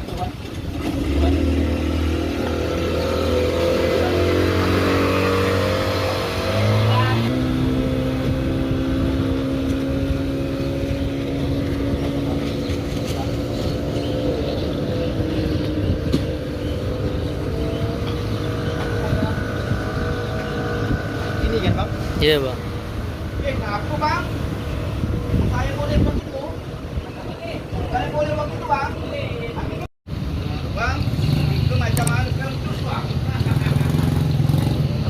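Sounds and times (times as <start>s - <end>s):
outboard engine revving: 0.1s - 27.1s.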